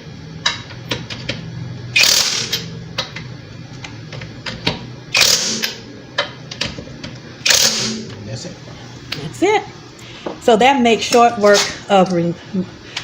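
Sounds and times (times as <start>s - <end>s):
impact wrench hammering: 2.0s - 2.7s, 5.1s - 6.3s, 7.4s - 8.1s.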